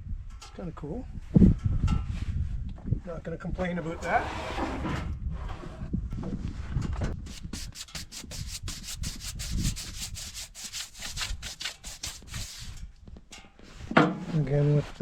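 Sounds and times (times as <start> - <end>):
rubbing strokes on wooden board: 7.3 - 12.8.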